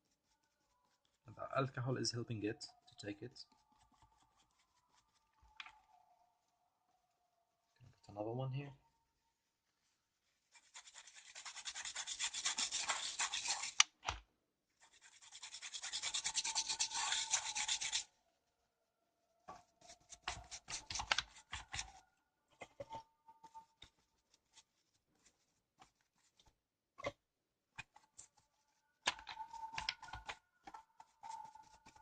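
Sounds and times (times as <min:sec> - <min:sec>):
scrubbing on circuit board: 0:10.5 - 0:13.9, 0:14.8 - 0:18.1.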